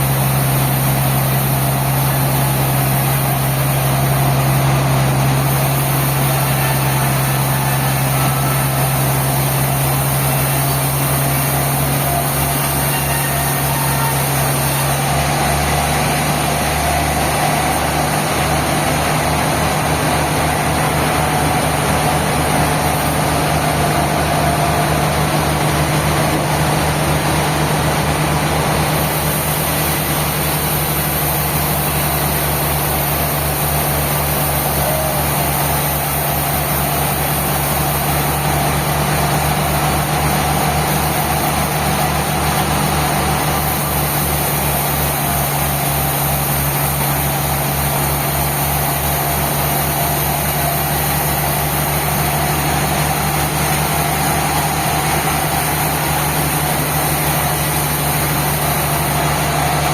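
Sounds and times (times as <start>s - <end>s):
sawmill engine throbbing: 0.0s - 59.9s.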